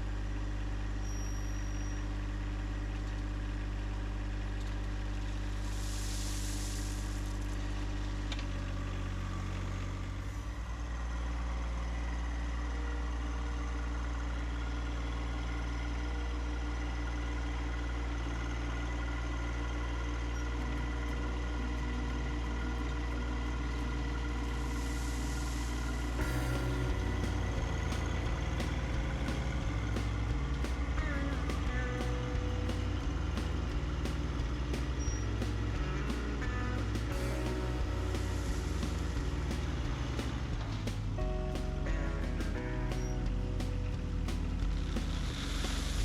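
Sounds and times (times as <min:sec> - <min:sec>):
tractor diesel engine running: 0:00.0 - 0:46.0
brief hiss: 0:05.5 - 0:08.1.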